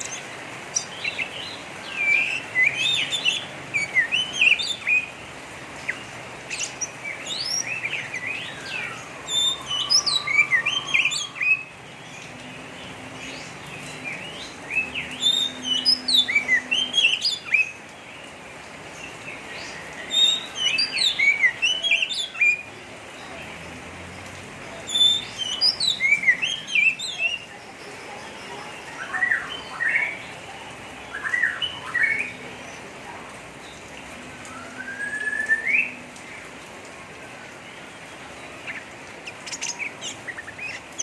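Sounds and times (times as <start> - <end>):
bird chattering song: 38.6 - 41.0.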